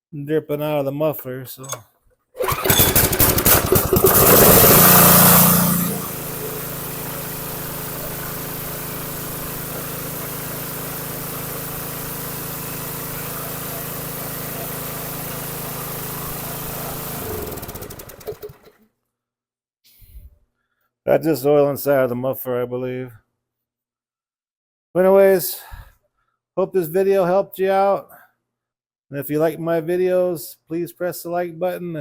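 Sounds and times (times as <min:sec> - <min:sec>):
engine winding down: 0:02.4 - 0:18.8
small engine running: 0:02.4 - 0:18.8.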